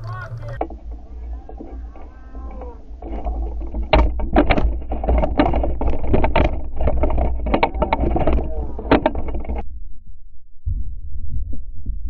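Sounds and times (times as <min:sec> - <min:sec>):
boat hull pounding over water: 0:00.0 - 0:09.6
low rumble: 0:00.0 - 0:12.0.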